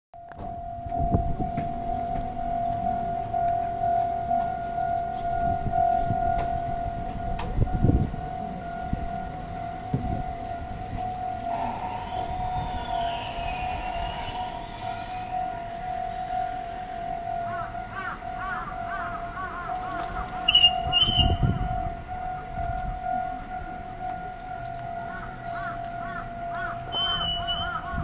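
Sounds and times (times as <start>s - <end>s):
level crossing alarm: 0.2s - 28.0s
train wheels squealing: 11.3s - 17.0s, 20.4s - 21.7s, 26.9s - 28.0s.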